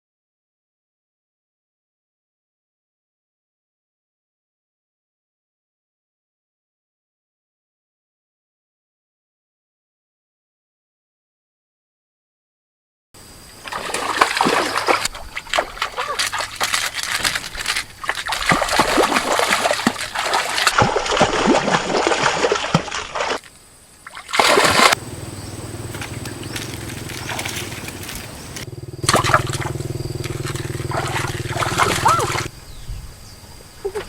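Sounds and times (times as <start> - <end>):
water splashing and sloshing: 13.5 - 32.5
steady low hum: 24.6 - 33.6.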